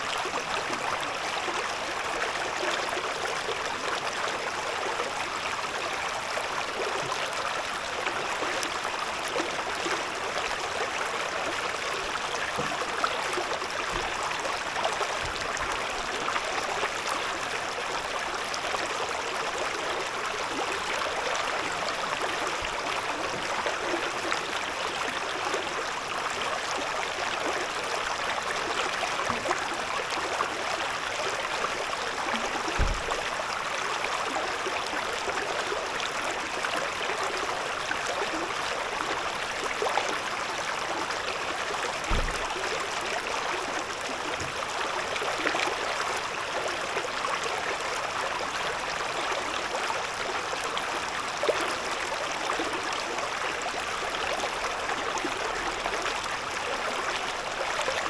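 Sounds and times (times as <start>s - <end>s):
river rushing over stones: 27.3s - 35.3s
low thuds: 32.8s - 33.3s, 42.1s - 42.6s.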